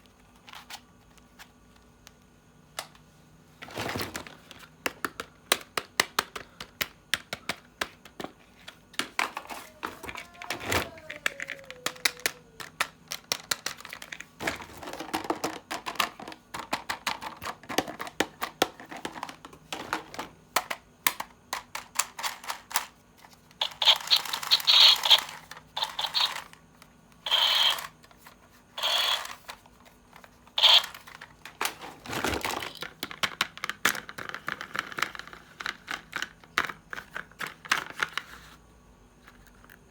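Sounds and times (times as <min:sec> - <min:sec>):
plastic toy pieces clicking: 0:10.0 - 0:14.2, 0:20.6 - 0:22.9, 0:23.6 - 0:26.6, 0:27.3 - 0:28.0, 0:30.6 - 0:31.6.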